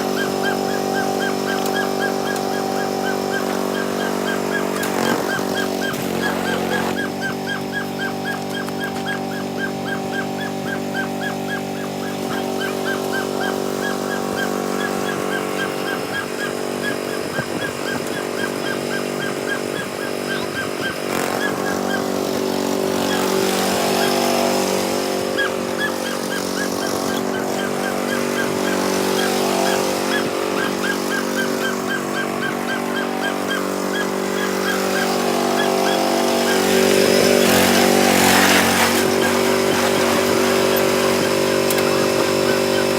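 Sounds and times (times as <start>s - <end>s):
riding mower engine running: 0.0s - 42.9s
rapid high-pitched chirp: 0.1s - 22.0s.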